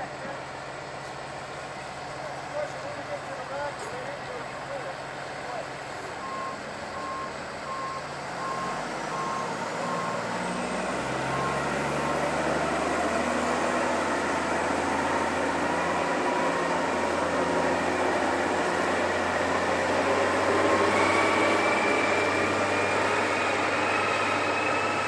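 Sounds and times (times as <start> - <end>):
reversing alarm beeping: 6.2 - 12.6, 19.0 - 25.0.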